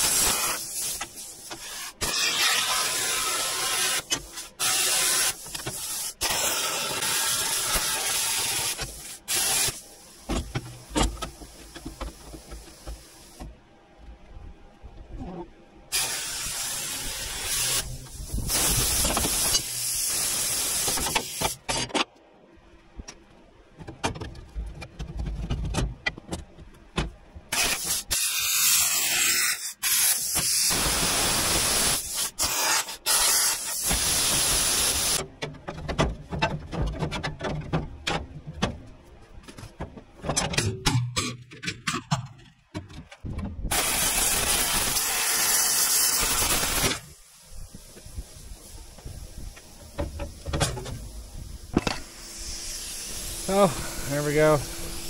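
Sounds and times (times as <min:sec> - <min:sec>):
plasma cutter hissing: 0:00.0 - 0:10.4, 0:15.9 - 0:21.6, 0:27.5 - 0:35.2, 0:43.7 - 0:49.6, 0:51.1 - 0:55.0.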